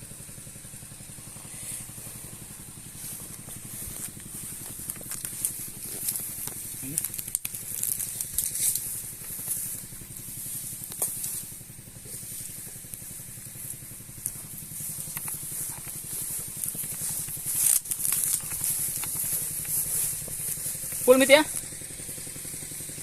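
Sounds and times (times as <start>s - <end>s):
small engine running: 0.0s - 23.0s
pressurised spray hissing: 0.5s - 6.8s.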